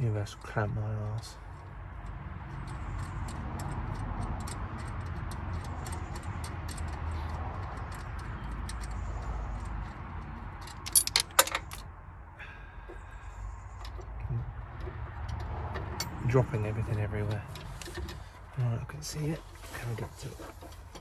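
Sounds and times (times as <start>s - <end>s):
metal nuts clattering: 1.6s - 11.9s
small metal parts clinking: 2.0s - 11.9s.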